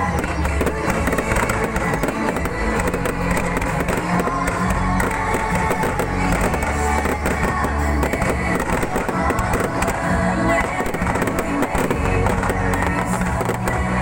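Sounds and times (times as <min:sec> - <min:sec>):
fireworks banging and crackling: 0:00.0 - 0:14.0
loud music: 0:00.0 - 0:14.0.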